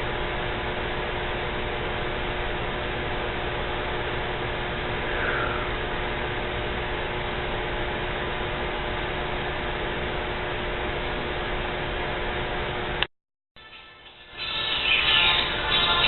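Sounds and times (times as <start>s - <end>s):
faint constant hum: 0.0s - 13.0s, 13.6s - 16.0s.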